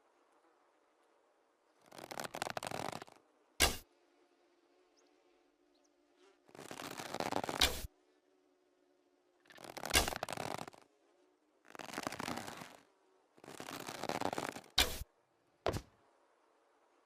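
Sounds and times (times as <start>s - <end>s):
rustling friction of bow: 1.7s - 3.9s, 6.2s - 7.9s, 9.4s - 10.9s, 11.6s - 15.1s
sharp snaps: 9.6s - 10.8s.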